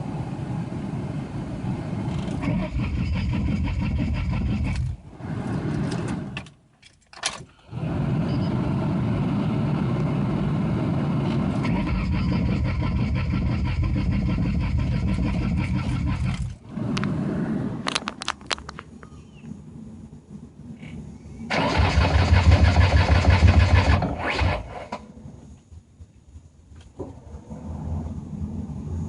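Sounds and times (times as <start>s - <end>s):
car engine cranking on starter: 2.1s - 6.6s, 11.4s - 17.0s, 21.5s - 25.0s.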